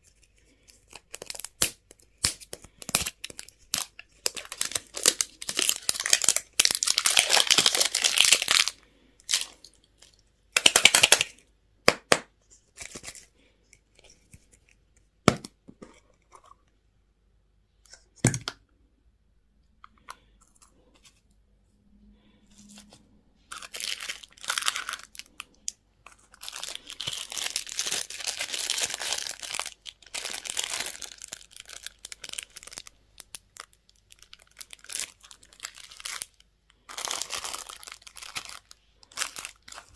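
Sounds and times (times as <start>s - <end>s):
wrappers tearing and crinkling: 0.3s - 9.7s, 23.5s - 25.4s, 26.3s - 39.9s.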